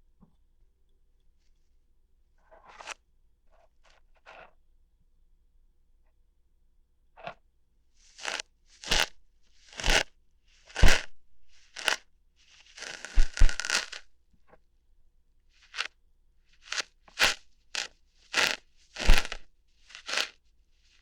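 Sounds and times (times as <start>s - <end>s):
ear hairs being plucked: 8.2s - 10.1s, 10.7s - 12.0s, 12.6s - 14.1s, 15.6s - 15.9s, 16.6s - 20.3s.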